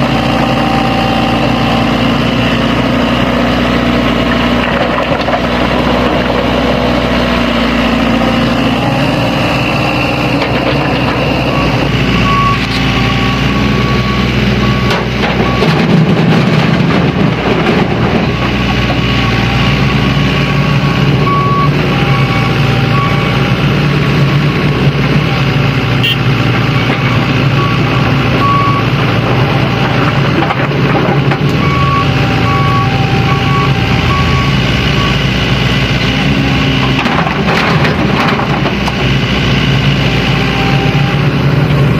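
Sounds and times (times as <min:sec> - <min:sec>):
reversing alarm beeping: 0:00.0 - 0:02.5, 0:07.8 - 0:15.9, 0:18.4 - 0:23.5, 0:26.0 - 0:29.0, 0:31.6 - 0:36.5
diesel engines running: 0:00.0 - 0:41.9.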